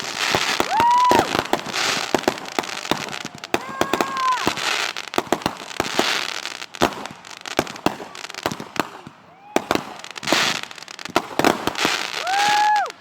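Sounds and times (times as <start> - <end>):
firework whistle: 0.0 - 5.0, 7.9 - 13.0
fireworks bangs and crackles: 0.0 - 13.0
fireworks hissing: 0.0 - 13.0.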